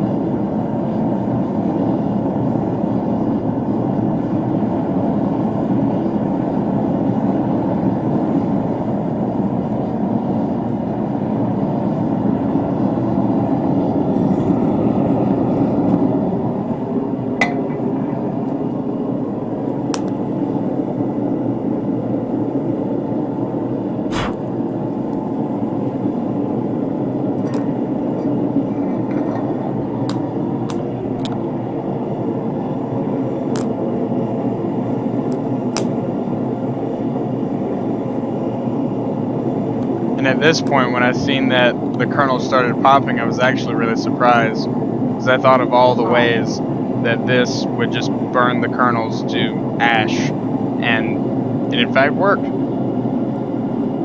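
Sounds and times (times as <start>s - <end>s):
gas forge burner roaring: 24.1s - 51.8s.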